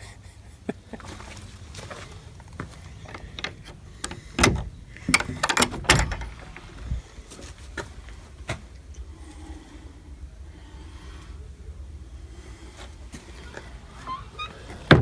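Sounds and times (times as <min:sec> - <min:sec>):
door knocks and clatters: 0:02.4 - 0:07.0.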